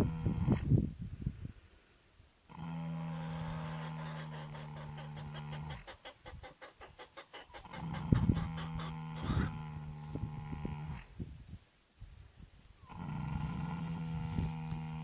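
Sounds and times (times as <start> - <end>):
horse snoring: 2.5 - 5.9, 12.9 - 15.0.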